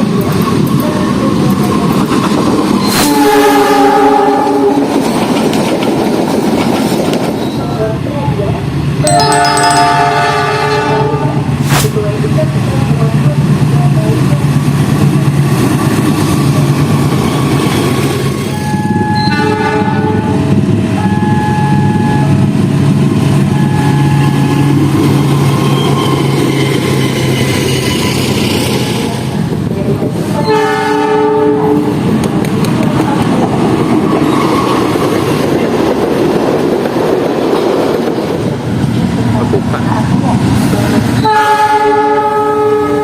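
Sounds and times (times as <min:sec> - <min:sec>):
locomotive multi-tone horn: 0:03.0 - 0:04.8, 0:09.1 - 0:11.4, 0:18.5 - 0:22.5, 0:23.5 - 0:24.7, 0:30.4 - 0:32.0, 0:41.2 - 0:43.0.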